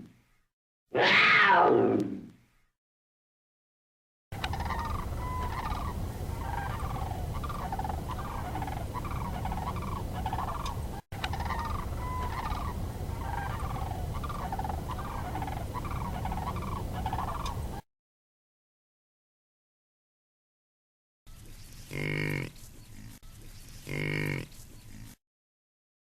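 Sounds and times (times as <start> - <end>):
short repeated animal calls: 21.8 - 25.2.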